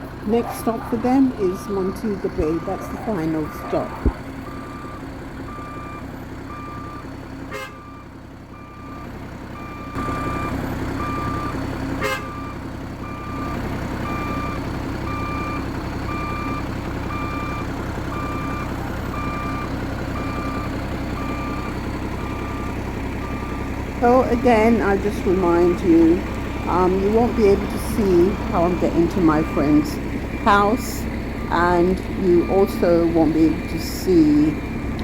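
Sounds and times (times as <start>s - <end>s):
large vehicle engine running: 0.0s - 35.0s
reversing alarm beeping: 0.3s - 35.0s.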